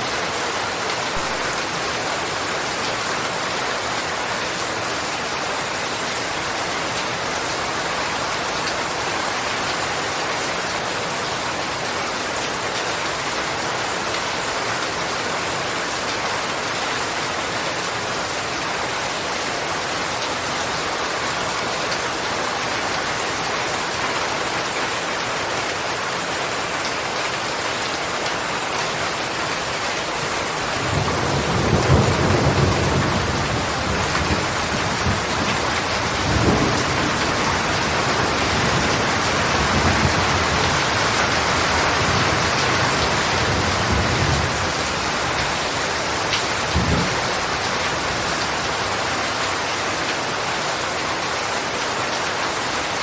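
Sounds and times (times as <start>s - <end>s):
steady rain: 0.0s - 53.0s
thunder rumbling: 30.8s - 44.8s, 46.7s - 47.7s.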